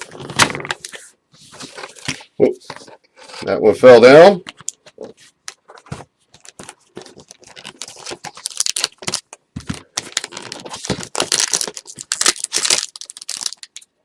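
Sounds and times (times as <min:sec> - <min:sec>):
foil wrappers crinkling and tearing: 0:06.4 - 0:13.9.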